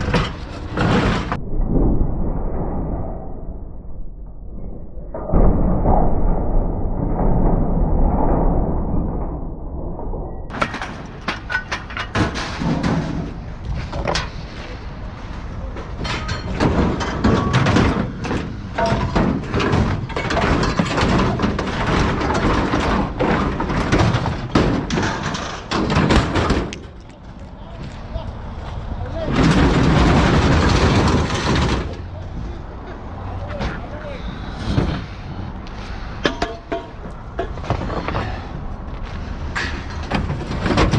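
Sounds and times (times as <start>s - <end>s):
scrap metal clanking and crashing: 0.0s - 1.4s, 10.5s - 27.1s, 29.2s - 32.2s, 36.2s - 38.5s, 39.3s - 40.9s.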